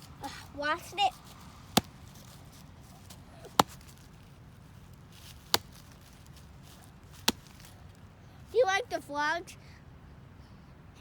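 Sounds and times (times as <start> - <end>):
stick knocking on log: 3.4 - 4.0.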